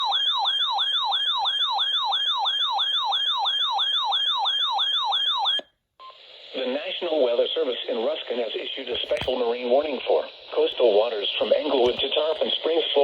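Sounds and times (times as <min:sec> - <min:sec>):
electronic siren yelping: 0:00.0 - 0:05.6.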